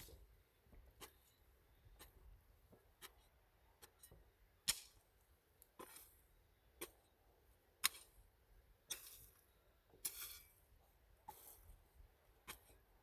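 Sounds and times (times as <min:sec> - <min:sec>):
hand tool striking ground: 0:04.6 - 0:05.0, 0:05.8 - 0:06.2, 0:07.8 - 0:08.2, 0:08.9 - 0:09.4, 0:10.0 - 0:10.5.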